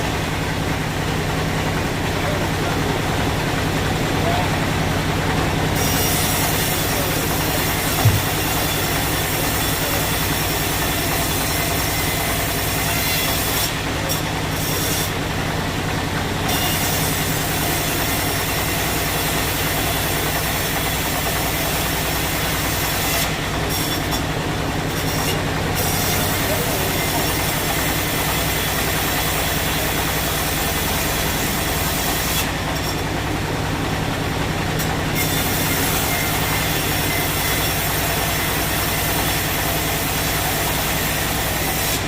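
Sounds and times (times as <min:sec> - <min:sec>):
sawmill saw running: 0:00.0 - 0:42.0
knock: 0:08.0 - 0:08.4.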